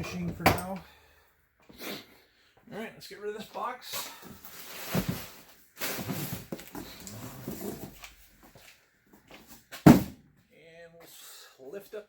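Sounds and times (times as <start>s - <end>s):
cardboard box scraping and rustling: 4.5s - 8.0s
knock on cardboard box: 9.9s - 10.2s.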